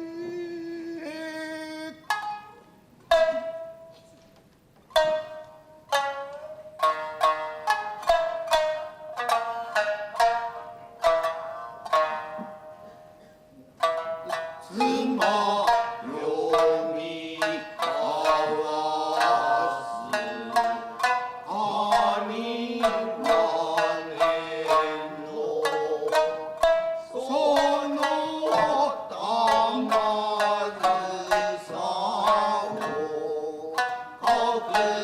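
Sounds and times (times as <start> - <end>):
shamisen plucked notes: 1.9 - 4.3, 4.9 - 35.0
person chanting with wavering notes: 14.6 - 35.0.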